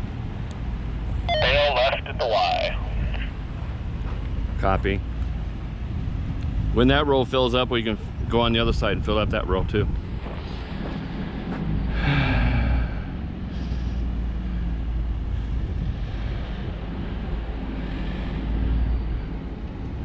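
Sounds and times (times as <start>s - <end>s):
car engines rumbling: 0.0s - 20.0s.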